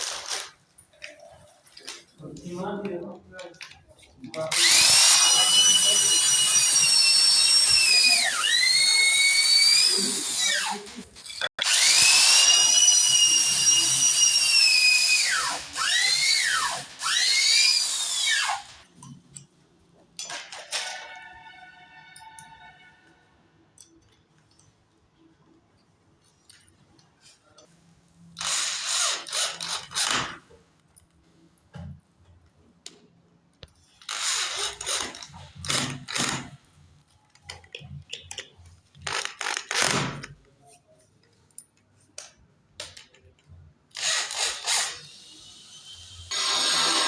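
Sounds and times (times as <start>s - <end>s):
power tool bursts: 4.5s - 18.8s, 44.0s - 47.0s.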